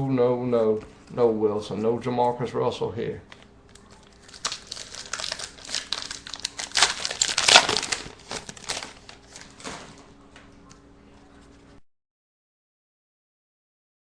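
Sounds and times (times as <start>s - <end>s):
wrapper crinkling: 3.6s - 10.1s.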